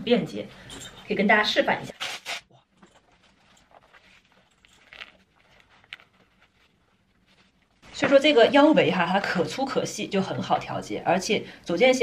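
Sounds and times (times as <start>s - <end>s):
belt rustling: 2.0s - 7.8s.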